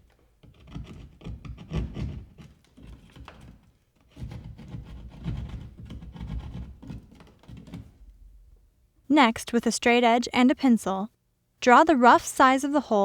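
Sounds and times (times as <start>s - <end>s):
hand saw cutting drywall: 0.0s - 8.0s.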